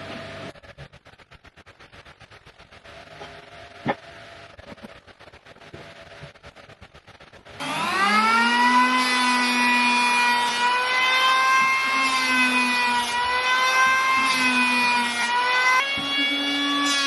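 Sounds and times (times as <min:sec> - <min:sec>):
wood router motor whine: 0:07.6 - 0:17.0.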